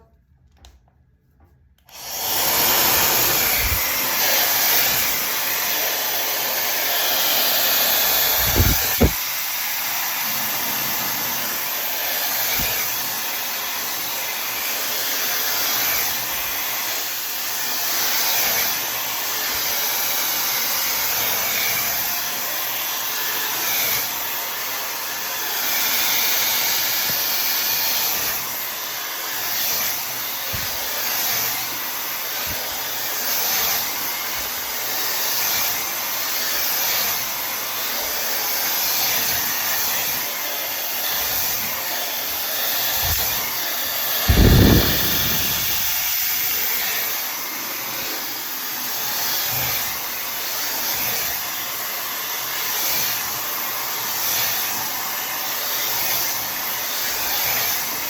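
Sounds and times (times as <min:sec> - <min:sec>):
hair dryer blowing: 0:01.8 - 0:58.0.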